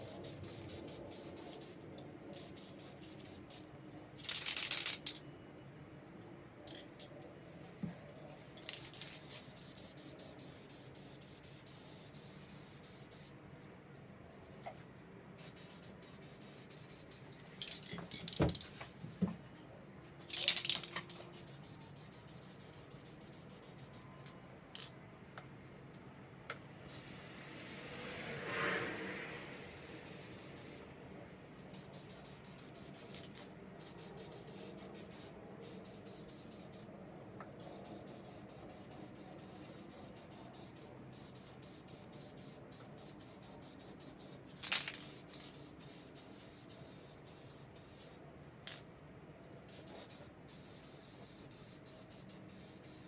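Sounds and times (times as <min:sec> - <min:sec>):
spray can hissing: 0:00.0 - 0:01.8, 0:02.4 - 0:03.7, 0:08.7 - 0:13.3, 0:15.4 - 0:17.2, 0:21.1 - 0:24.0, 0:26.9 - 0:30.9, 0:31.7 - 0:36.9, 0:37.6 - 0:48.2, 0:49.7 - 0:53.0.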